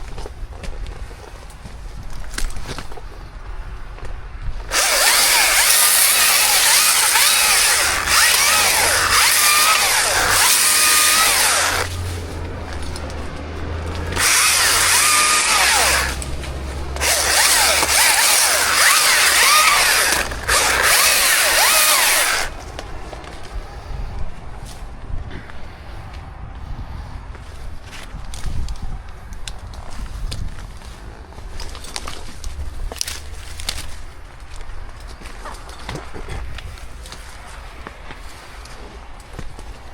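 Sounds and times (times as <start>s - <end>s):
chainsaw revving cutting wood: 4.7s - 12.2s, 13.9s - 22.6s.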